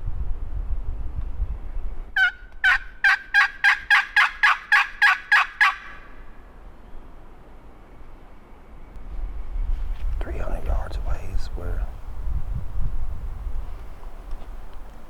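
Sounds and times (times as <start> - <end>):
wild turkey calling: 2.2 - 6.2.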